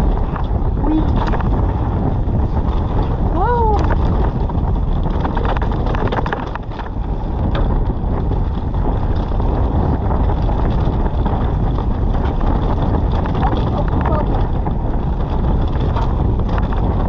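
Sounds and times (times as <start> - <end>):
bike knocks and rattles: 0.0 - 17.0
wind rushing over microphone: 0.0 - 17.0.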